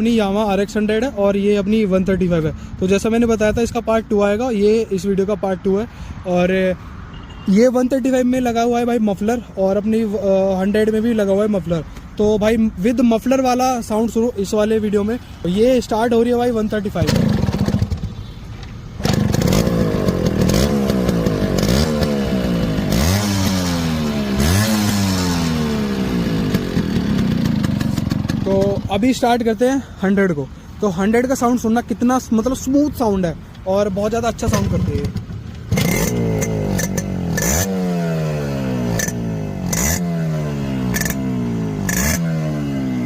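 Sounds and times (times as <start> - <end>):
motorcycle engine revving: 17.0 - 18.4, 19.0 - 29.2, 34.4 - 43.0.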